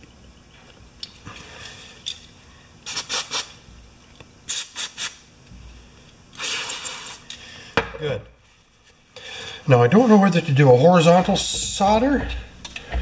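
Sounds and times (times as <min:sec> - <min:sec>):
aerosol can spraying: 0:02.8 - 0:03.6, 0:04.5 - 0:05.2, 0:06.4 - 0:07.2.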